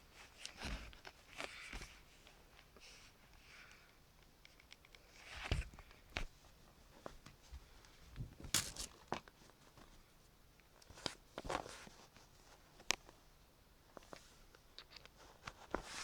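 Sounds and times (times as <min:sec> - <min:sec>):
handling clicks and rustles: 0:08.2 - 0:09.4.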